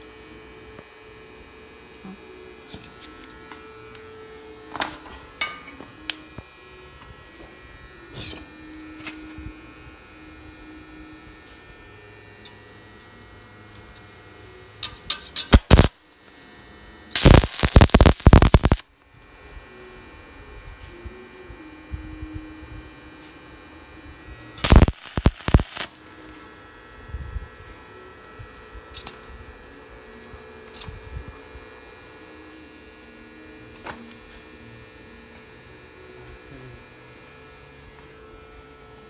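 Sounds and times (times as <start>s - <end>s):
welder humming with faint whine: 0.0s - 39.0s
welding arc crackling: 15.5s - 16.0s, 17.2s - 18.8s, 24.6s - 26.4s.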